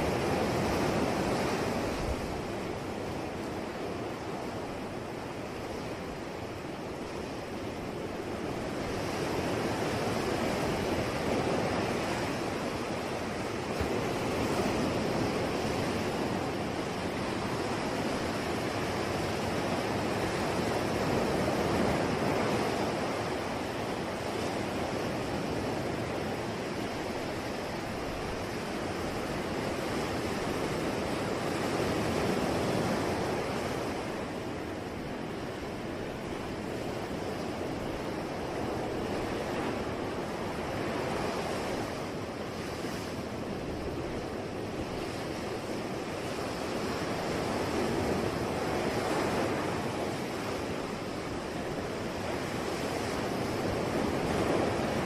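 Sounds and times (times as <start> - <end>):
ocean waves breaking: 0.0 - 55.0.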